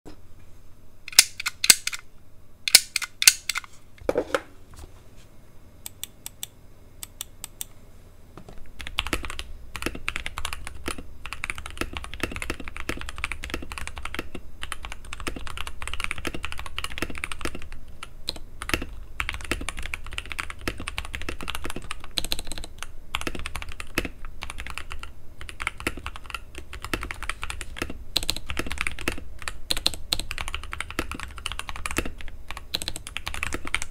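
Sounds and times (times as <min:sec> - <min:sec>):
mechanical keyboard typing: 0:08.8 - 0:33.9.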